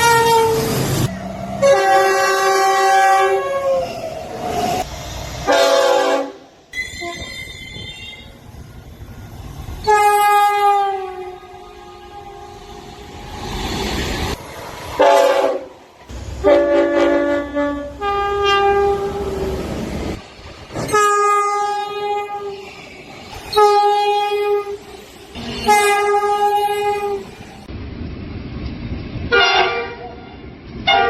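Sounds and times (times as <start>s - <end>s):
locomotive horn blasts: 0.0s - 0.7s, 1.6s - 3.8s, 5.4s - 8.3s, 9.8s - 12.7s, 15.0s - 15.7s, 16.4s - 19.4s, 25.6s - 27.3s, 29.3s - 31.0s
train rumbling past: 0.0s - 31.0s.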